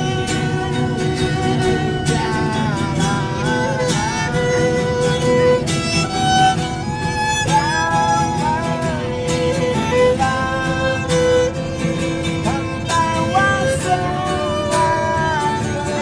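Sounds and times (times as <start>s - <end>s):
rhythmic accompaniment: 0.0s - 16.0s
violin melody with slides: 0.0s - 16.0s.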